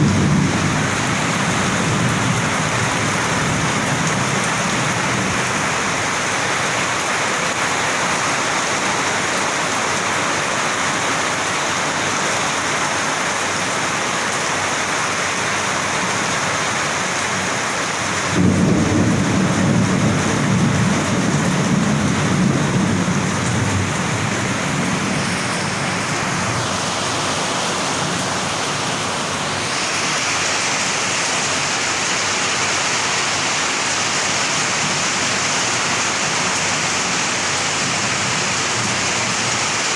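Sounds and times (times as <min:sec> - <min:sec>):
thunder rumbling: 0:00.0 - 0:07.0, 0:18.2 - 0:26.7
heavy rain: 0:00.0 - 0:39.9.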